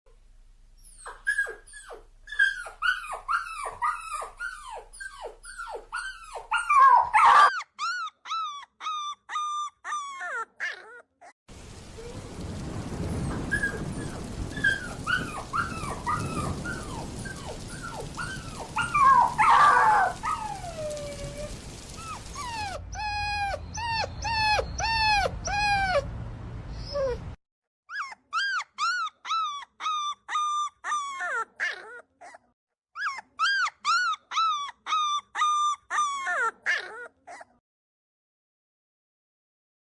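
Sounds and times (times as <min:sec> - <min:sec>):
puppy whimpering and yelping: 0:00.8 - 0:11.4, 0:13.3 - 0:26.1, 0:26.7 - 0:37.6.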